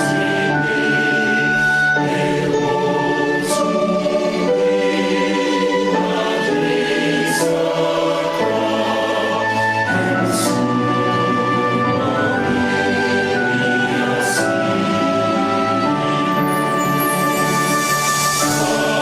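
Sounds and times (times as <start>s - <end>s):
choir singing in harmony: 0.0s - 19.0s.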